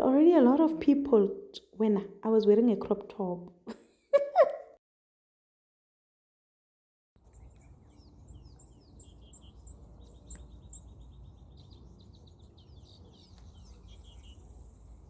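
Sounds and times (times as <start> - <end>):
low steady rumble: 7.2 - 15.0
small birds chirping: 7.2 - 15.0.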